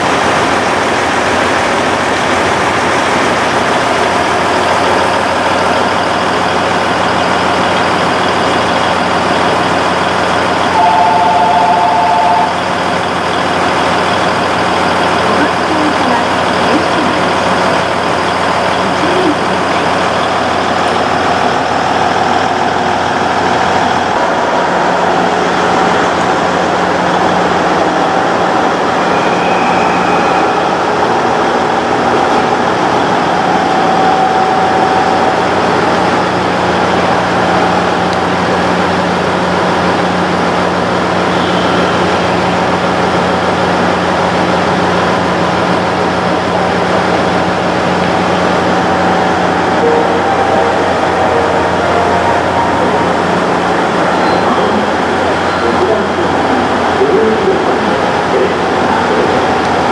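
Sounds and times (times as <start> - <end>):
train diesel engine humming: 0.0 - 59.9
high steady tone: 10.6 - 13.5, 14.4 - 36.4, 48.0 - 56.9.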